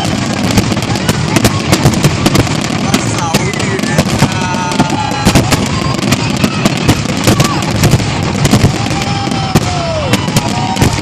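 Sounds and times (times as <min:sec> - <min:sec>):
firework bangs and crackles: 0:00.0 - 0:11.0
firework whistles gliding down: 0:03.7 - 0:11.0.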